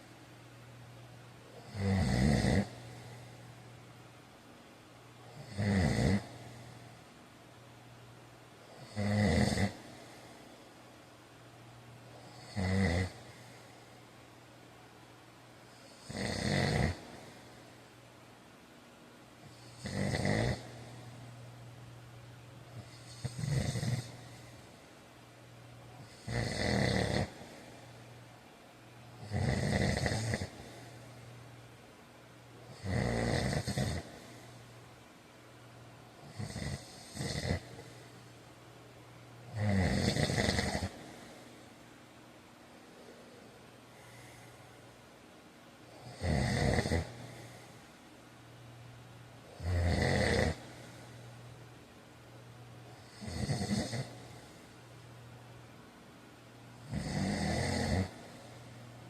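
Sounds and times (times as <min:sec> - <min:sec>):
steady low hum: 0:00.0 - 0:59.0
man snoring: 0:01.5 - 0:03.3, 0:05.2 - 0:06.8, 0:08.7 - 0:10.2, 0:12.2 - 0:13.6, 0:15.8 - 0:17.5, 0:19.4 - 0:21.1, 0:22.8 - 0:24.6, 0:26.0 - 0:27.7, 0:29.2 - 0:31.0, 0:32.7 - 0:34.6, 0:36.2 - 0:38.0, 0:39.5 - 0:41.4, 0:45.9 - 0:47.7, 0:49.5 - 0:51.1, 0:53.0 - 0:54.6, 0:56.8 - 0:58.6.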